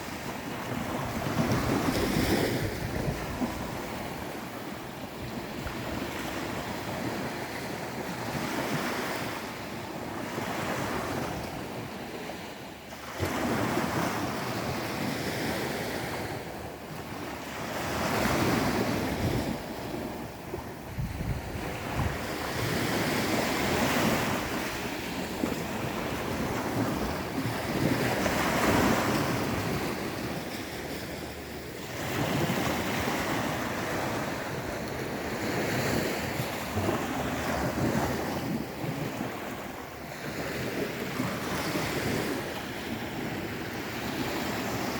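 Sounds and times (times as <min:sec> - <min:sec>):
wind buffeting microphone: 0:00.0 - 0:08.9, 0:17.8 - 0:44.9
surf breaking ashore: 0:00.0 - 0:44.9.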